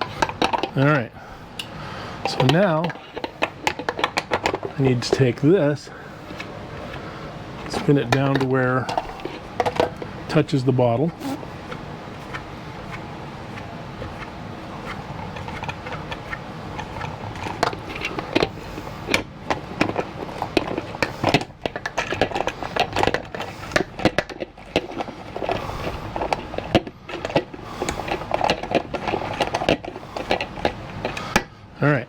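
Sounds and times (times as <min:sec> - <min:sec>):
plastic parts knocking: 0:00.0 - 0:01.0, 0:02.2 - 0:31.5
plastic clicking and rattling: 0:02.2 - 0:05.3, 0:11.6 - 0:31.5.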